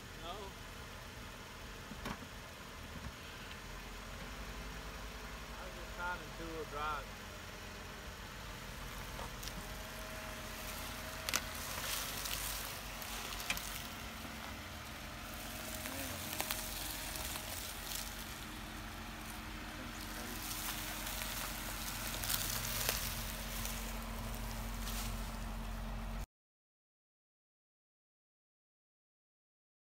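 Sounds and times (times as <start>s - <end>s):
low engine hum: 0.0s - 26.3s
tyres crunching on gravel: 8.3s - 26.2s.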